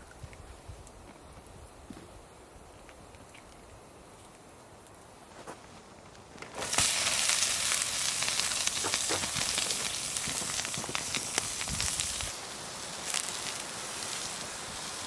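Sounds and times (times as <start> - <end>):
campfire crackling: 2.5 - 15.0
sharp pops: 6.4 - 12.3.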